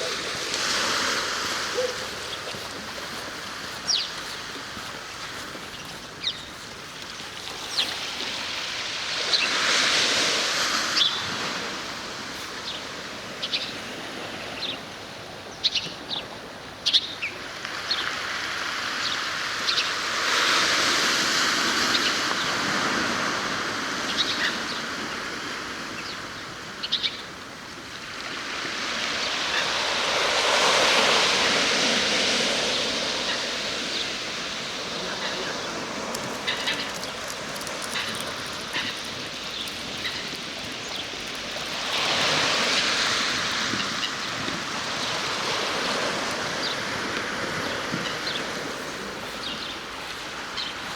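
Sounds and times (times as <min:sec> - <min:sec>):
waves washing in: 0:00.0 - 0:15.2, 0:17.4 - 0:26.0, 0:27.8 - 0:50.9
small birds chirping: 0:01.7 - 0:09.6, 0:34.9 - 0:46.9.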